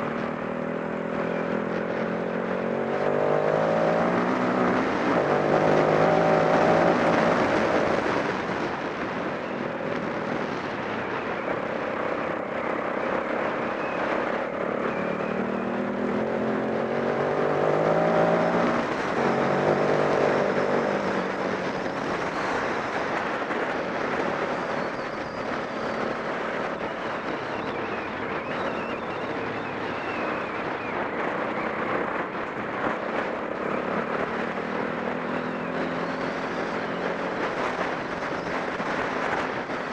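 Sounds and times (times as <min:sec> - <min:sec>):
off-road motorcycle engine: 0:00.0 - 0:39.9.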